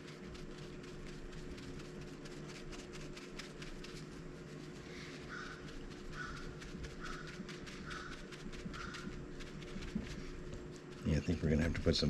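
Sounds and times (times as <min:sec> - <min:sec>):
steady low hum: 0:00.0 - 0:12.0
bird calling: 0:05.2 - 0:09.2.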